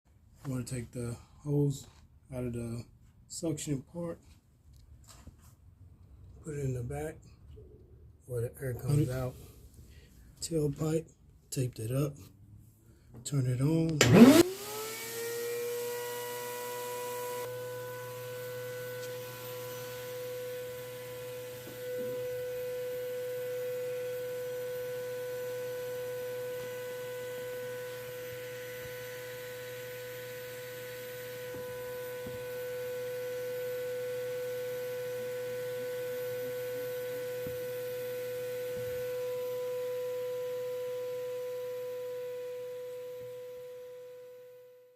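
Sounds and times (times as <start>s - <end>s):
shop vac motor whining: 13.9s - 44.9s.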